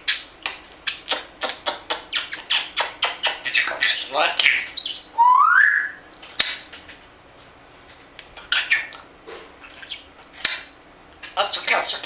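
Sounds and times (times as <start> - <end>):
parrot squawks and chatter: 0.8 - 6.7
parrot rising whistle: 5.0 - 6.1
parrot clicks: 6.1 - 7.0.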